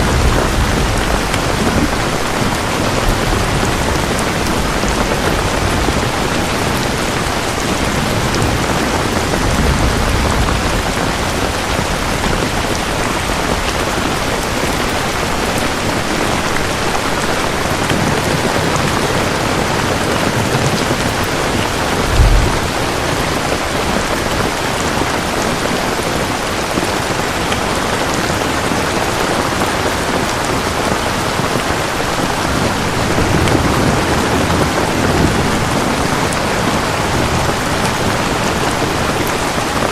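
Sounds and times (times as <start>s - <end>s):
thunder rumbles: 0.0s - 13.6s, 20.3s - 24.5s
heavy rain: 0.0s - 39.9s
loud low thump: 22.0s - 23.1s.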